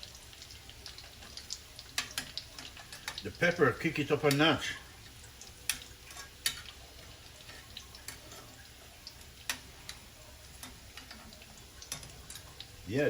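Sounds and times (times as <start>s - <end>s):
oil sizzling in a pan: 0.0s - 13.0s.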